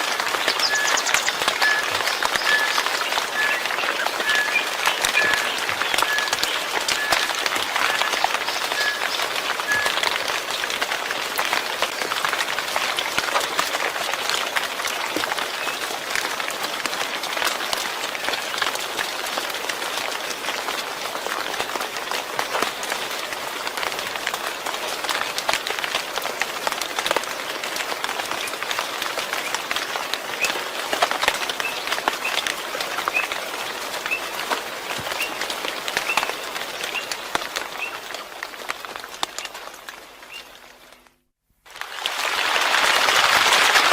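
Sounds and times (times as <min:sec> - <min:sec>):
heavy rain: 0:00.0 - 0:43.9.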